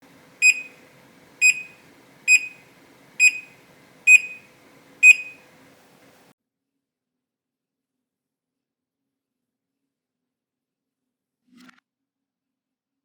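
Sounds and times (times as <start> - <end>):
short high electronic beeps: 1.4 - 2.6, 3.2 - 5.4.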